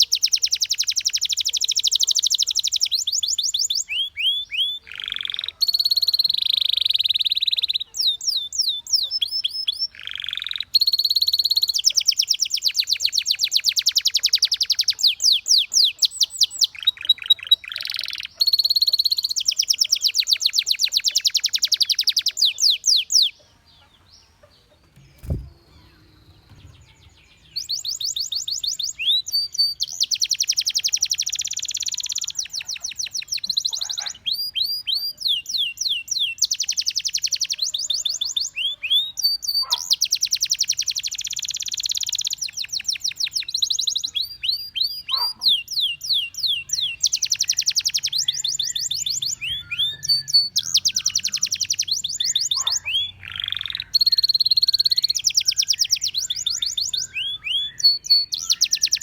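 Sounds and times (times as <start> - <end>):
canary singing trills: 0.0 - 59.0
low thump: 24.9 - 26.9.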